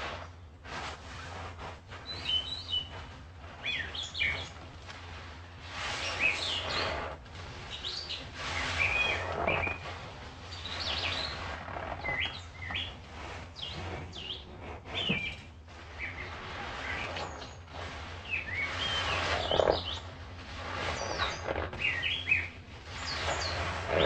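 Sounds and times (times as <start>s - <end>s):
wild birds chirping: 3.6s - 4.6s, 5.9s - 20.1s, 20.8s - 24.0s.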